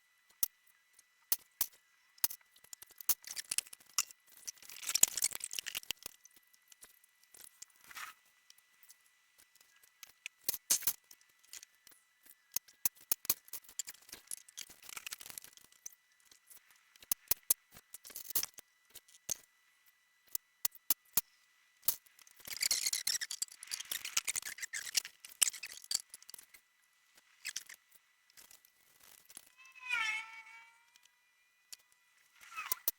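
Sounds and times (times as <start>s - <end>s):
small hard objects clicking: 0.3s - 19.4s, 20.3s - 26.6s.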